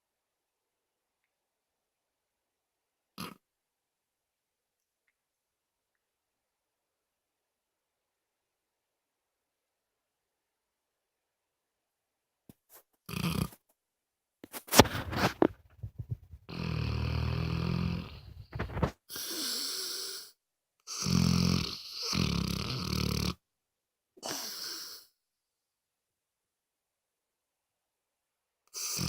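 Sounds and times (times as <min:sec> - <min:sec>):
dog snoring: 0:03.2 - 0:03.4, 0:13.1 - 0:13.6, 0:16.5 - 0:20.3, 0:20.9 - 0:23.4, 0:24.2 - 0:25.0, 0:28.8 - 0:29.0
dog snorting and snuffling: 0:12.7 - 0:13.7, 0:14.5 - 0:20.1.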